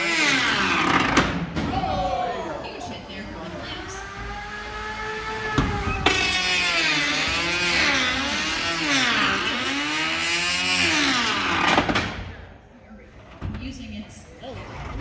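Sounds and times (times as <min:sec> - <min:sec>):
electric motors whining: 0:02.5 - 0:11.9
sharp knocks: 0:05.4 - 0:07.4.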